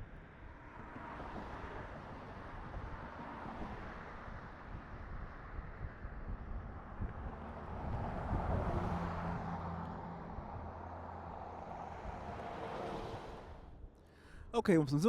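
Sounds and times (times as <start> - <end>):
wind rumble on microphone: 4.2 - 9.5.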